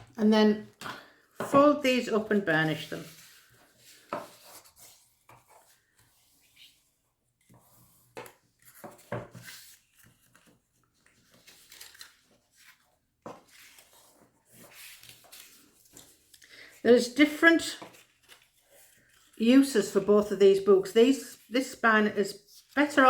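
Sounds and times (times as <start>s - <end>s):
soft rubbing of paper: 2.3s - 20.4s.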